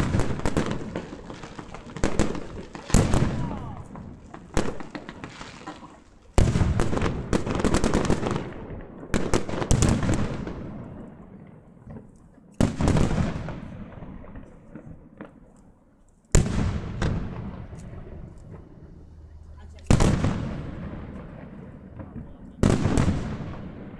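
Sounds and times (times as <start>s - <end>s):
fireworks booming: 0.0s - 15.6s, 16.3s - 23.9s
fireworks crackling: 0.0s - 23.9s.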